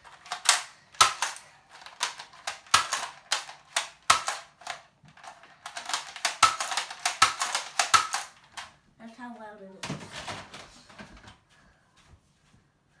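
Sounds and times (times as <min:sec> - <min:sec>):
plastic toy blaster clicks: 0:00.0 - 0:08.7
toy blaster firing cracks: 0:00.0 - 0:08.7.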